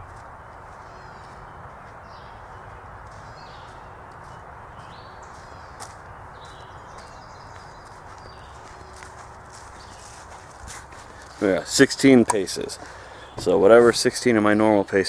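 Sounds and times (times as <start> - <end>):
birds chirping: 0.0 - 15.0
footsteps on outdoor ground: 0.0 - 15.0
steady outdoor hiss: 0.0 - 15.0.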